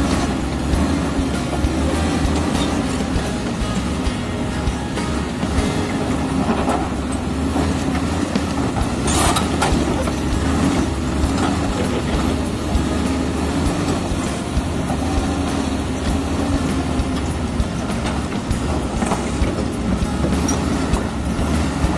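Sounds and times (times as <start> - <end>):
bulldozer diesel engine under load: 0.0 - 21.9
short clanks: 0.0 - 21.9.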